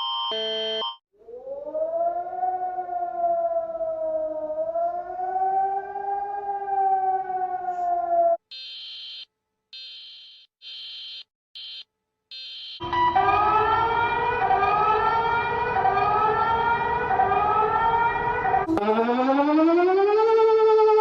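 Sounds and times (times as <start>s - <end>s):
upward sweeping alarm tone: 12.5s - 21.0s.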